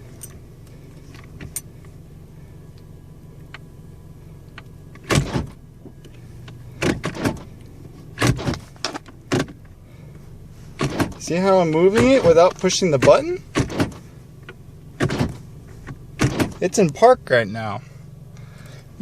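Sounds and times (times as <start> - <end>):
gear shifter clunking: 0.0 - 2.0, 4.4 - 9.8, 10.7 - 17.1
car engine idling: 0.0 - 19.0.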